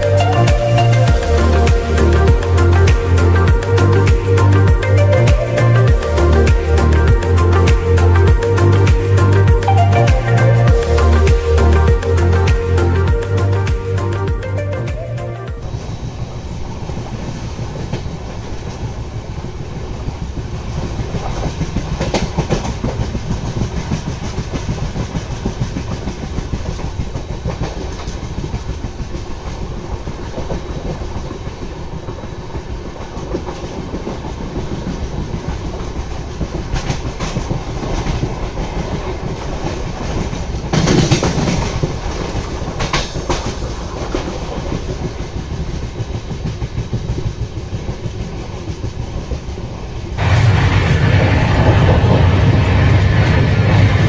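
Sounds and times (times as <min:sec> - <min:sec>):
train wheels rumbling on rails: 0:00.0 - 0:54.0
train clicks and clatter: 0:15.6 - 0:54.0.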